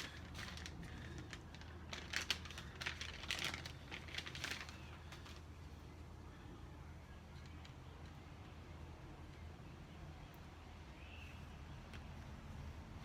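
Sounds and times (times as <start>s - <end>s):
rustles and clicks of handling: 0.0s - 6.1s, 7.2s - 8.6s
low room hum: 0.0s - 13.0s.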